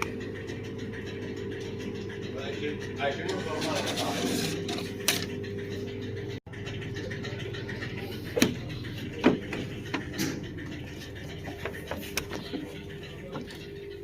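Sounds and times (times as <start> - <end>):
mechanical hum with held tone: 0.0 - 14.0
sharp clicks and knocks: 5.0 - 14.0.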